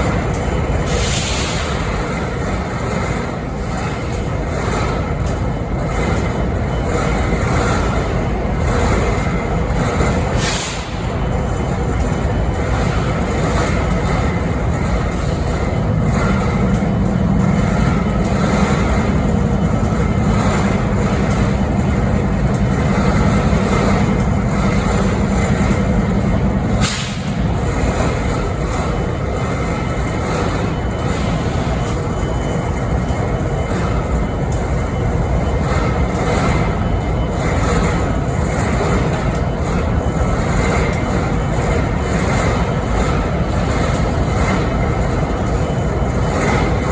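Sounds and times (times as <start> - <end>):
diesel locomotive idling: 0.0 - 46.9.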